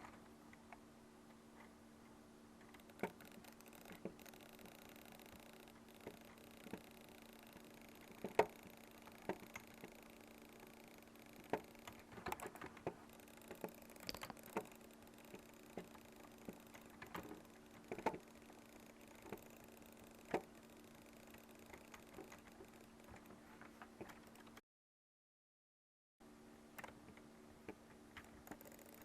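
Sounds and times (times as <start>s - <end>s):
faint steady hum: 0.0s - 24.6s, 26.2s - 29.0s.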